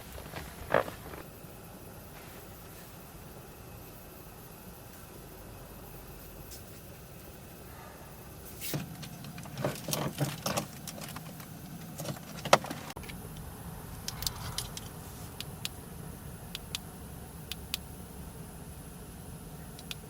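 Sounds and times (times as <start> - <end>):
handling knocks and clicks: 8.7 - 13.2.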